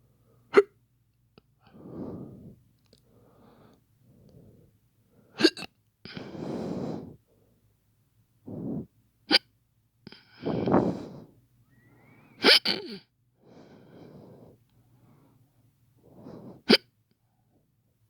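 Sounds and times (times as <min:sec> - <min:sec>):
man faking hiccups: 0:00.5 - 0:00.7, 0:05.4 - 0:05.7, 0:12.4 - 0:13.0
loud breaths: 0:01.7 - 0:04.8, 0:06.1 - 0:07.2, 0:08.5 - 0:08.9, 0:10.3 - 0:12.4, 0:13.4 - 0:16.7.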